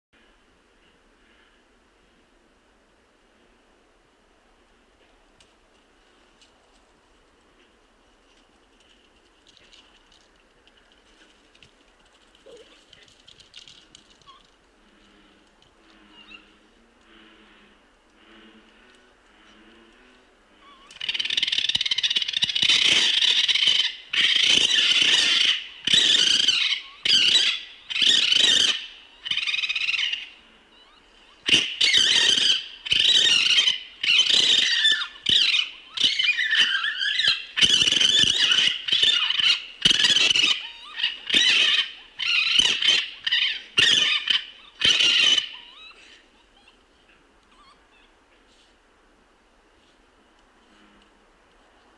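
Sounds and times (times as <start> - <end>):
harsh high-pitched animal squealing: 30.8 - 46.8.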